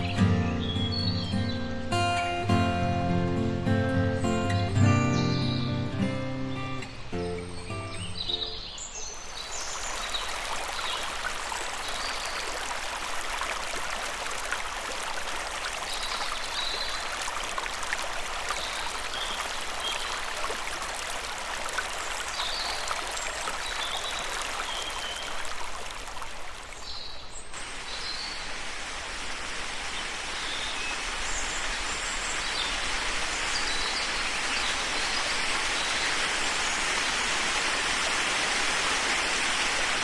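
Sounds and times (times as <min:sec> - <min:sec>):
stream rushing: 0:00.0 - 0:40.0.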